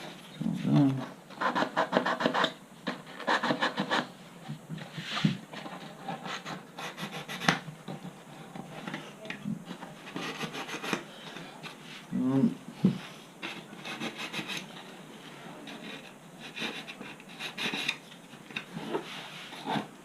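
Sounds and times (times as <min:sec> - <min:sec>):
sandpaper rubbing: 0:10.1 - 0:11.0, 0:13.5 - 0:14.7.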